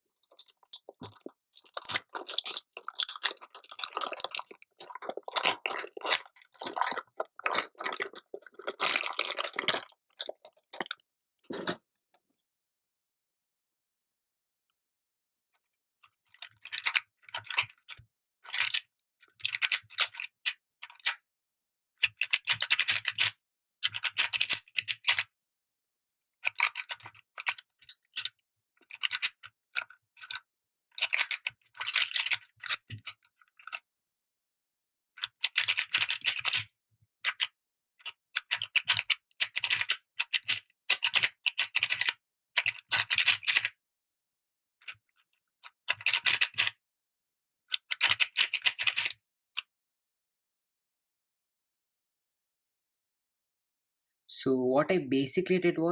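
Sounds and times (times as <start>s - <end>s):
speed cube clicking and scraping: 0.2s - 10.6s.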